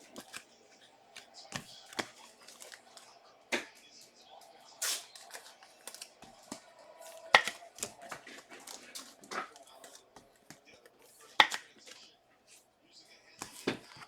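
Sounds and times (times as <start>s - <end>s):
cards clicking and tapping: 0.0s - 3.8s, 4.8s - 12.2s, 13.4s - 14.0s
foil wrapper rustle: 1.2s - 3.1s.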